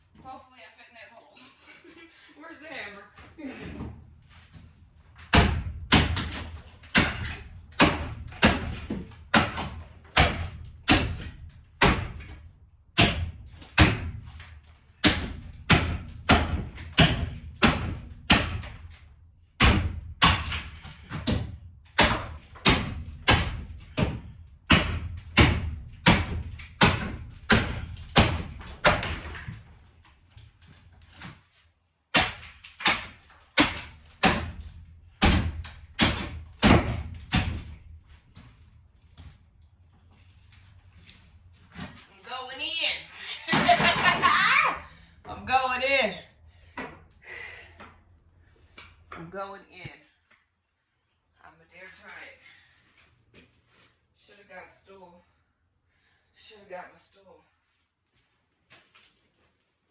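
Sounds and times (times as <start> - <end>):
hard knocks: 5.2 - 12.3, 32.1 - 37.9.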